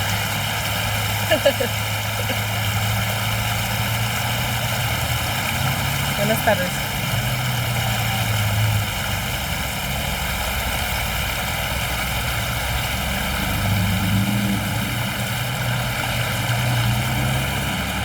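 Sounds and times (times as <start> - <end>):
low drone: 0.0 - 18.0
river rushing: 0.0 - 18.0.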